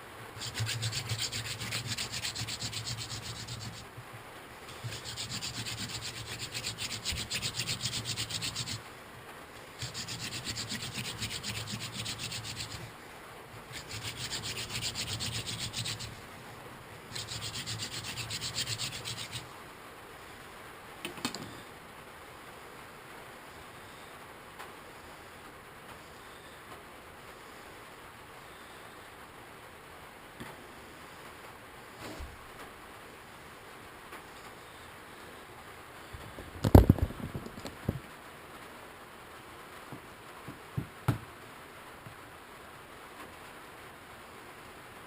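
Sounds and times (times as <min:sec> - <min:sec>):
hand drill spindle rubbing wood: 0:00.4 - 0:03.9, 0:04.7 - 0:08.8, 0:09.8 - 0:12.9, 0:13.7 - 0:16.2, 0:17.1 - 0:19.5.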